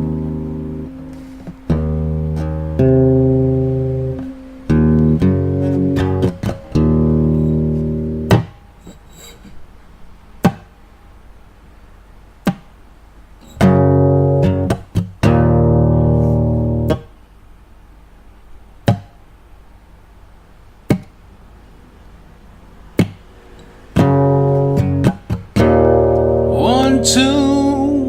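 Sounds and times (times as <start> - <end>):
guitar chords strummed: 0.0 - 9.0, 13.4 - 17.1, 23.9 - 28.0.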